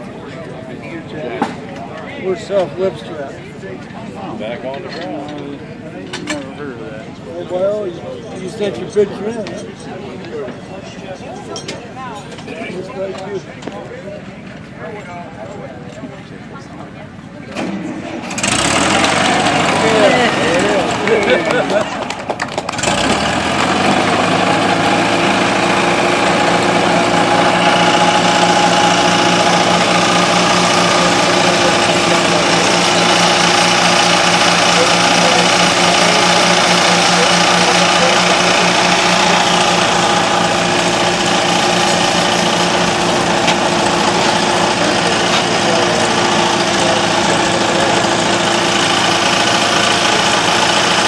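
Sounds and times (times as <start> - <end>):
tractor engine idling: 12.2 - 51.0.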